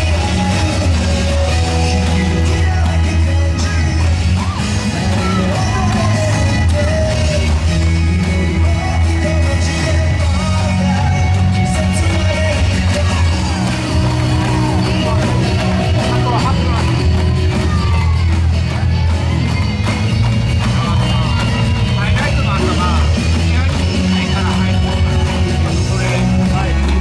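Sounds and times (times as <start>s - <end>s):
pop-rock dance music with vocal: 0.0s - 27.0s
people yelling: 0.7s - 7.5s, 10.6s - 20.0s.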